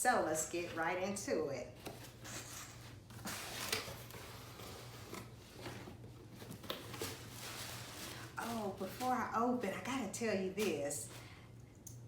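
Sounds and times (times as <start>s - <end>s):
package rustling and scraping: 1.8s - 9.6s.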